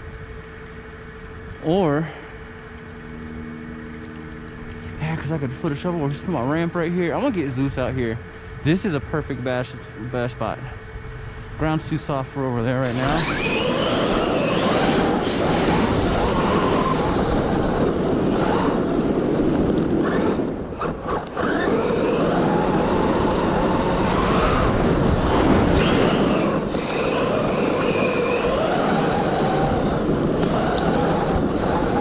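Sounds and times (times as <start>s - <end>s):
electric motor whining: 0.0s - 32.0s
tyres on loose dirt: 12.6s - 32.0s.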